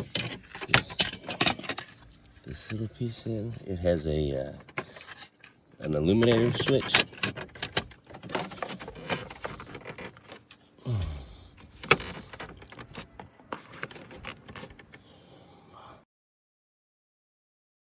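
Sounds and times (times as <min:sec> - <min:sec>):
plastic trim clicking and rattling: 0:00.0 - 0:02.9, 0:04.6 - 0:10.6, 0:11.5 - 0:15.0.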